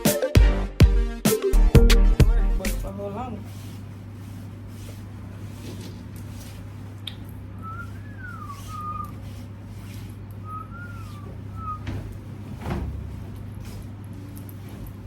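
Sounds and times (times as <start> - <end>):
steady low hum: 1.6 - 15.0
person whistling: 7.6 - 9.2, 10.4 - 11.9.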